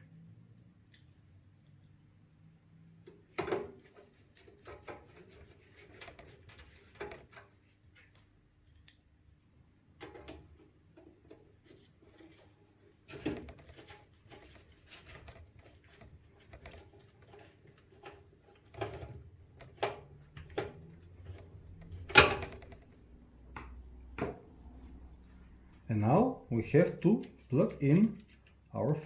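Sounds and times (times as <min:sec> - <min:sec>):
hardware clicks and knocks: 0:13.1 - 0:25.0
screwdriver tapping computer case: 0:18.7 - 0:23.0.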